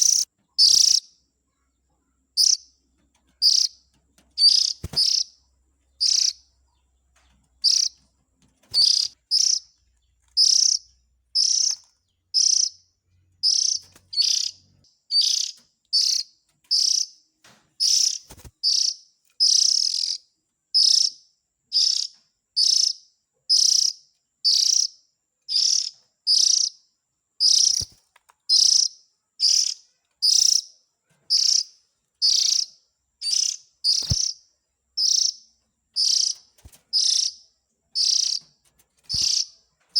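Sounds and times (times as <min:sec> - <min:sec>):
magpie-robin harsh calls: 0:37.0 - 0:37.4.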